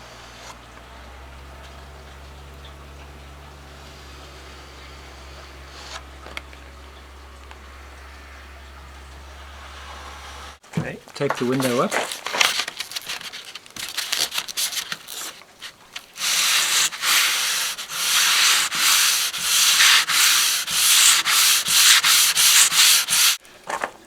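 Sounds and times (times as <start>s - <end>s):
sandpaper rubbing on filler: 4.2s - 8.5s, 12.8s - 23.4s.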